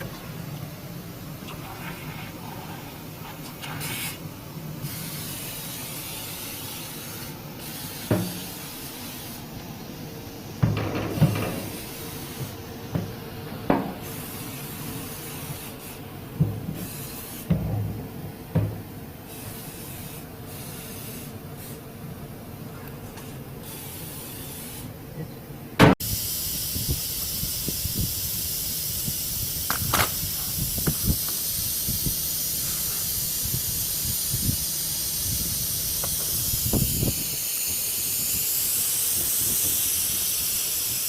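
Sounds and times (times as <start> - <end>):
hissing spray: 0.0 - 17.6, 18.6 - 21.9, 26.0 - 41.0
knocks and clunks on engine: 10.6 - 11.8, 17.5 - 18.9.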